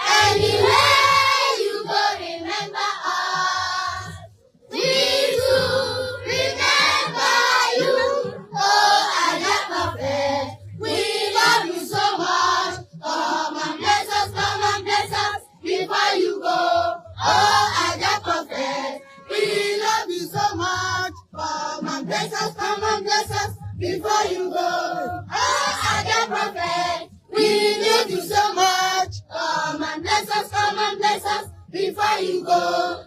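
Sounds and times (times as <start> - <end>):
choir singing: 0.0 - 33.0
music with bass line: 0.0 - 33.0.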